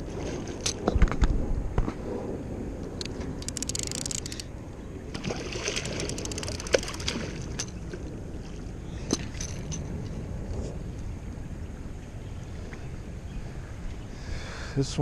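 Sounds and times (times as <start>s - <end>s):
river water around a boat: 0.0s - 15.0s
wind: 0.0s - 15.0s
quick clicks: 3.0s - 4.5s.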